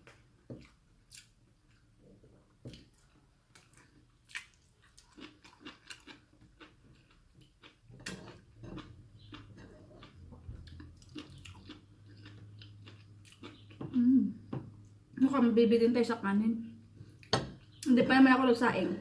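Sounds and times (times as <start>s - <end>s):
person chewing and eating: 0.0s - 15.0s.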